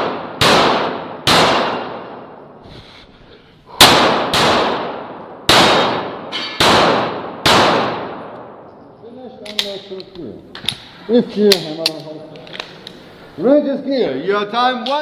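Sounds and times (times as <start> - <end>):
pistol shots with echo: 0.0 - 2.5, 3.8 - 8.7.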